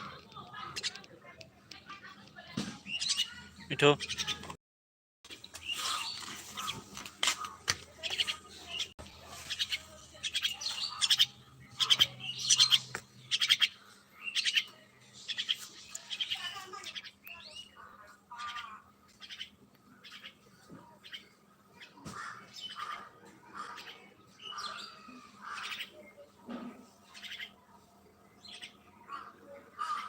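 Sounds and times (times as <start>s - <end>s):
myna chattering and whistling: 8.0s - 17.8s.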